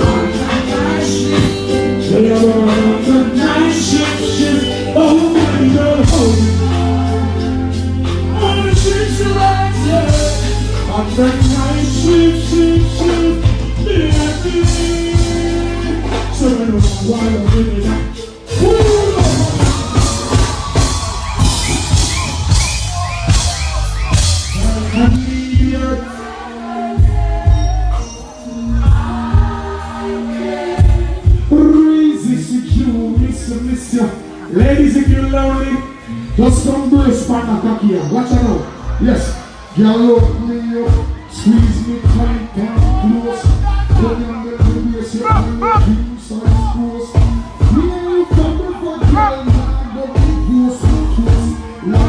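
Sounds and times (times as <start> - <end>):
person singing: 0.0 - 20.0, 39.8 - 52.0
heavy bass line: 0.0 - 26.1, 30.7 - 37.5, 40.2 - 52.0
dancehall music: 0.0 - 52.0.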